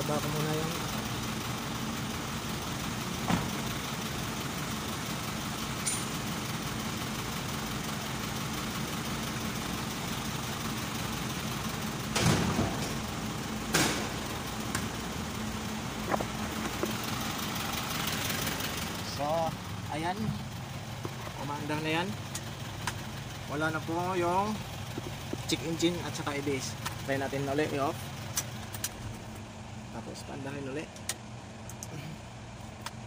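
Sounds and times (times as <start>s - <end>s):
diesel engine idling: 0.0s - 33.0s
loud metal clunks: 12.1s - 14.9s.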